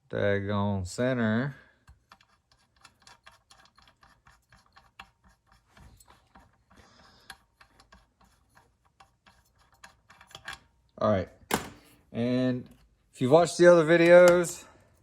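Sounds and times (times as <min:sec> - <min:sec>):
small mechanical clicks and rubbing: 0:01.9 - 0:10.7.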